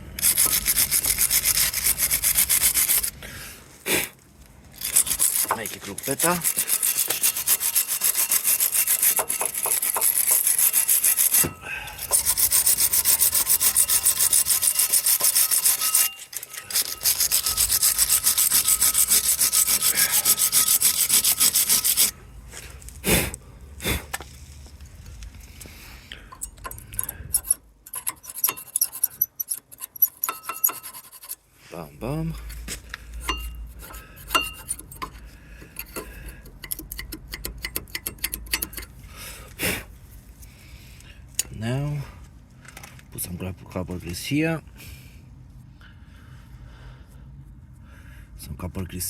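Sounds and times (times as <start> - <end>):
wire brush scrubbing metal: 0.2 - 3.2, 4.8 - 22.2, 26.4 - 32.4, 33.2 - 39.0.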